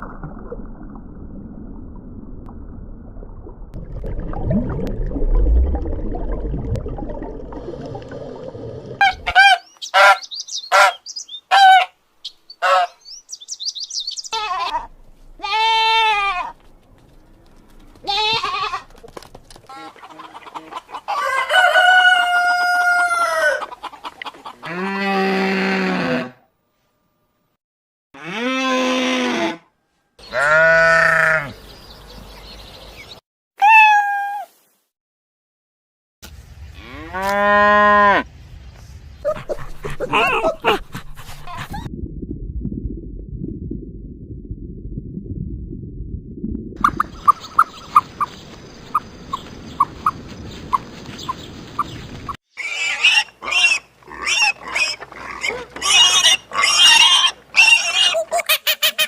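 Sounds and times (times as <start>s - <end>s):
animal bleating: 14.3s - 16.6s, 18.0s - 18.9s, 30.2s - 31.6s
animal squealing harshly: 52.6s - 58.4s.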